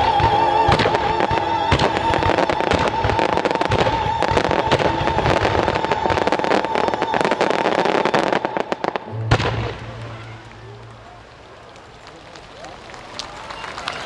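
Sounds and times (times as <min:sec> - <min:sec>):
fireworks bangs and crackles: 0:00.0 - 0:14.0
big firework bang: 0:09.1 - 0:12.2.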